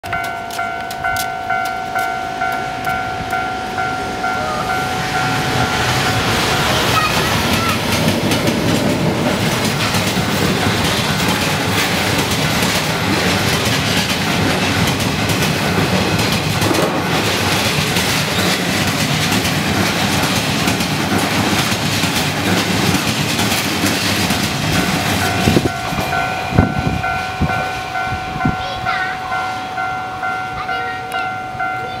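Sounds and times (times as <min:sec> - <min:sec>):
level-crossing alarm ringing: 0:00.0 - 0:08.4, 0:23.2 - 0:32.0
train wheels rushing on rails: 0:00.0 - 0:32.0.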